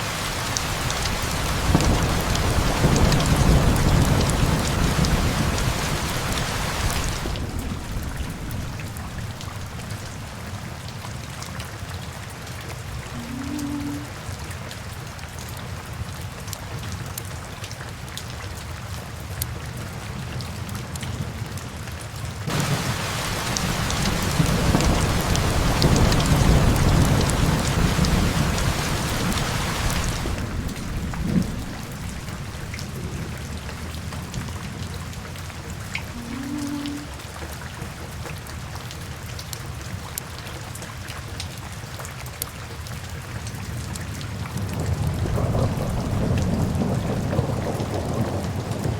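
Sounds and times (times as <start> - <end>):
thunder rumbling: 0.0 - 11.2, 22.5 - 37.6, 44.6 - 48.9
steady rain: 0.0 - 48.9.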